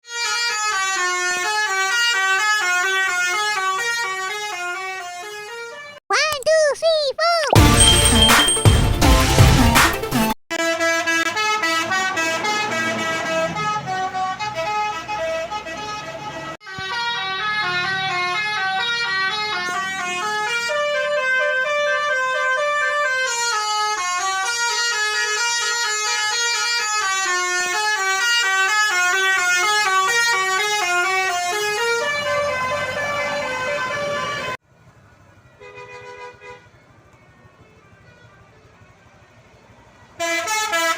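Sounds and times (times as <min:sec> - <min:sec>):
bus horn playing a melody: 0:00.0 - 0:06.0, 0:10.5 - 0:34.6, 0:35.6 - 0:36.7, 0:40.2 - 0:40.9.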